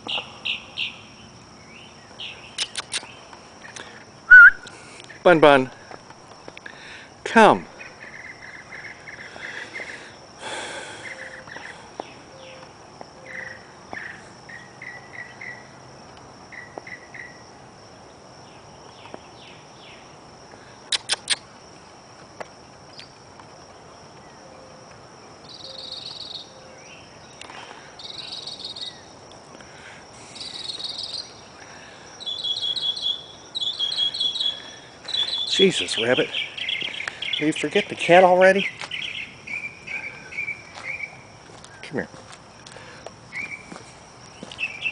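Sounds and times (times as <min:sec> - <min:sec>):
birds chirping and trilling: 0:00.0 - 0:04.3, 0:07.7 - 0:15.7, 0:25.4 - 0:29.1, 0:29.8 - 0:41.8, 0:42.6 - 0:43.8, 0:44.4 - 0:44.9
high insect trill: 0:00.0 - 0:44.9
pulsed chirping: 0:04.3 - 0:04.7, 0:32.2 - 0:38.0.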